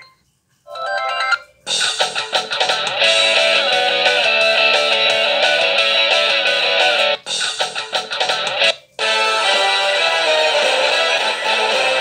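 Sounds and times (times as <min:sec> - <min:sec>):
ringtone tune: 0:00.0 - 0:04.0, 0:08.6 - 0:12.0
guitar phone ringtone: 0:00.0 - 0:12.0.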